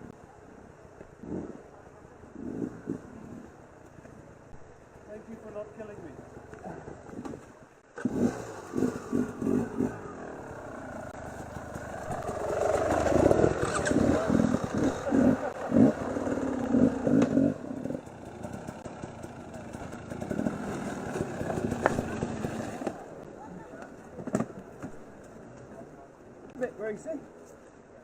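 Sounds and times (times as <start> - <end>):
motorcycle engine revving: 7.9 - 23.2.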